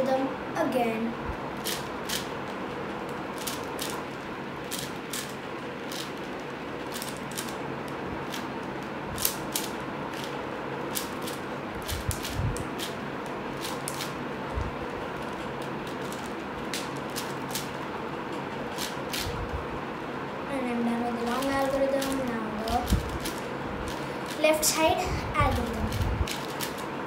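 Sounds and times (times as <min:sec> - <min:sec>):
puzzle cube plastic clicks: 0:03.4 - 0:04.0, 0:04.7 - 0:06.2, 0:06.8 - 0:07.6, 0:09.2 - 0:10.3, 0:10.9 - 0:13.0, 0:15.3 - 0:17.7, 0:21.4 - 0:22.2, 0:25.9 - 0:26.8.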